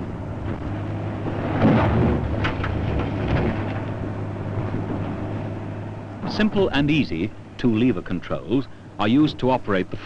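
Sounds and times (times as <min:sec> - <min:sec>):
excavator diesel engine rumbling: 0:00.0 - 0:10.0
machine clanks: 0:01.5 - 0:05.2.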